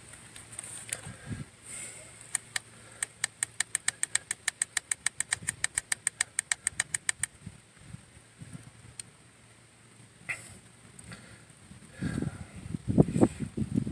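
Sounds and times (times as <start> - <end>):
rapid regular clicking: 2.2 - 7.4.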